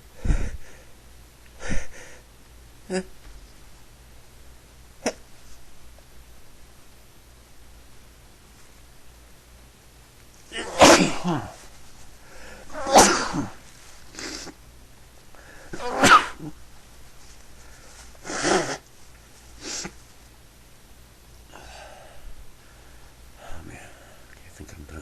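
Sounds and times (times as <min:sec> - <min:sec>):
person sneezing: 0:05.0 - 0:05.3, 0:10.5 - 0:11.7, 0:12.4 - 0:14.6, 0:15.6 - 0:16.6, 0:18.2 - 0:18.8, 0:19.6 - 0:20.0.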